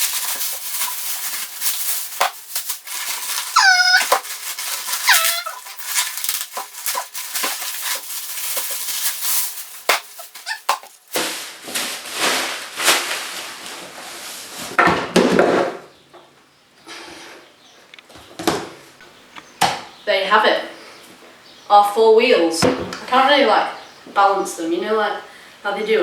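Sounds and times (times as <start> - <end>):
packaging rustling and clattering: 0.0 - 14.8
short squeaks: 3.5 - 4.2, 4.9 - 5.8, 10.2 - 10.9.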